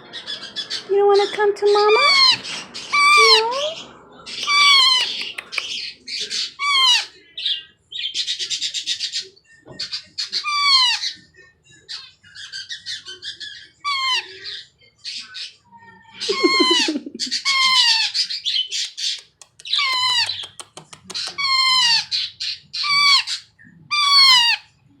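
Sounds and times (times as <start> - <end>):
parakeet squawking: 0.1 - 9.2, 9.9 - 11.2, 12.4 - 14.6, 16.2 - 18.6, 19.7 - 20.5, 21.2 - 24.7.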